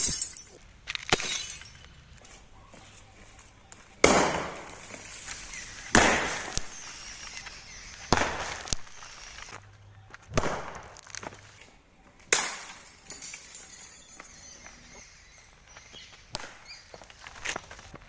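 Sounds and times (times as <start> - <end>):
fluorescent tubes bursting: 4.1 - 11.6.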